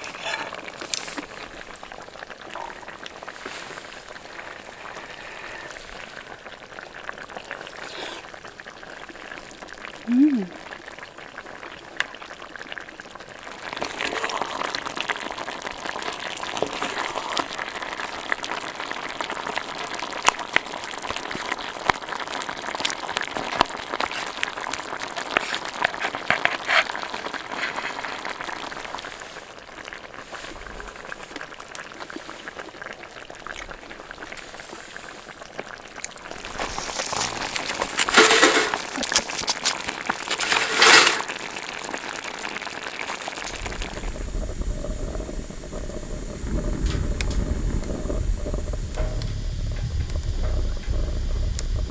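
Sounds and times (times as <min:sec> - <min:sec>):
pot of food simmering: 0:00.0 - 0:51.9
loud noise bursts: 0:43.5 - 0:51.9.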